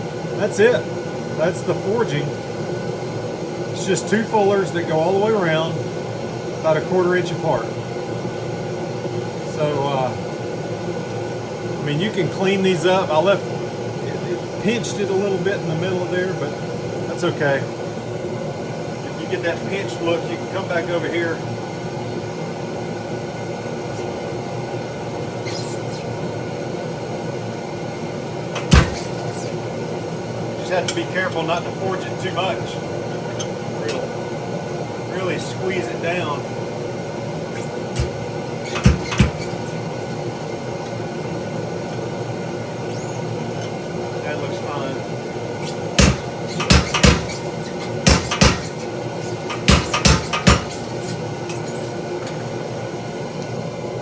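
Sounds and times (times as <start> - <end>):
workshop equipment hum and hiss: 0.0 - 54.0
faint high squeaks: 25.4 - 26.2, 28.6 - 29.6, 42.8 - 43.8, 50.6 - 52.3
metal tools clanking: 28.6 - 29.5, 37.6 - 39.8, 45.6 - 52.4.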